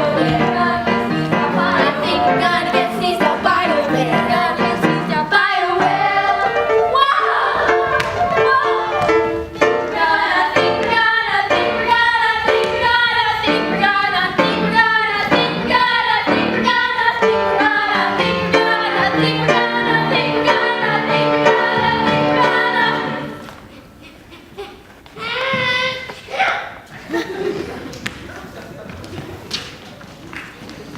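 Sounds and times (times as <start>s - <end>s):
instrumental accompaniment: 0.0s - 23.4s
group of people singing: 0.0s - 23.6s.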